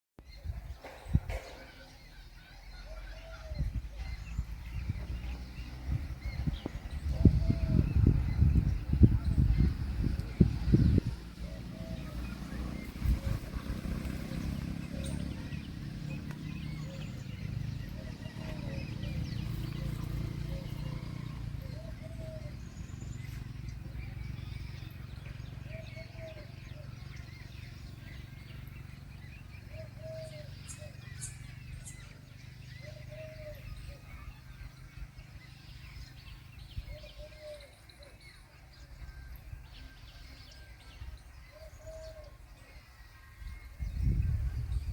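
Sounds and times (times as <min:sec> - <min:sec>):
birds chirping: 0:00.2 - 0:44.9
steady low rumble: 0:03.5 - 0:33.0, 0:43.6 - 0:44.9
bird low call phrase: 0:06.0 - 0:28.4.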